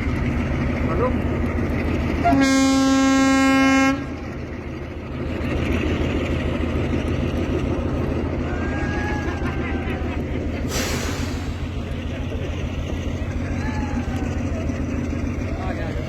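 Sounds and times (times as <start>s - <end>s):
diesel locomotive engine running: 0.0s - 16.0s
train horn: 2.2s - 4.3s.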